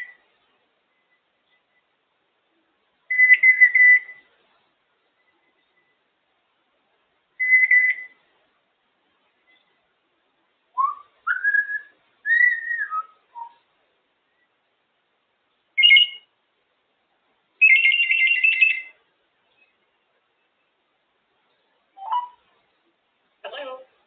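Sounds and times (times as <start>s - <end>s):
parrot whistling: 3.1s - 4.2s, 7.4s - 8.2s, 10.8s - 13.6s, 15.8s - 16.2s, 17.6s - 19.0s, 22.0s - 22.4s.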